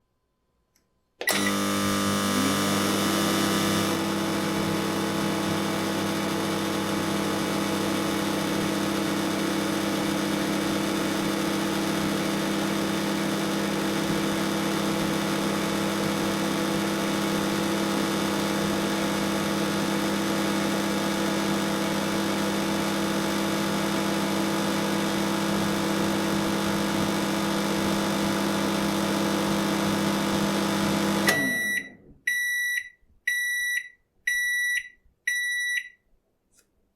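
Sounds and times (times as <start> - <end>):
microwave oven humming: 1.3 - 31.9
microwave short high beeps: 31.3 - 36.0.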